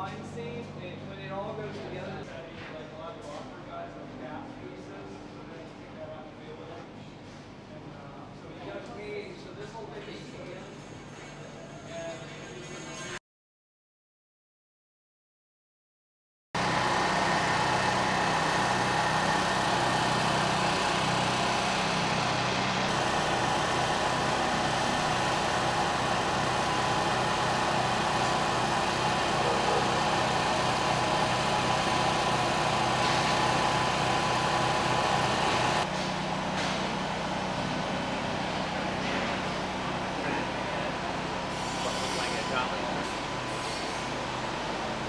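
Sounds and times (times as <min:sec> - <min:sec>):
engine idling: 0:16.6 - 0:35.8.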